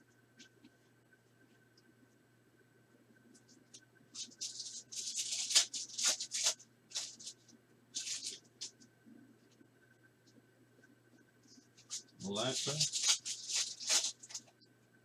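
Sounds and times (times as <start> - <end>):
cards being shuffled: 4.2 - 7.4, 8.0 - 8.8, 11.8 - 14.6.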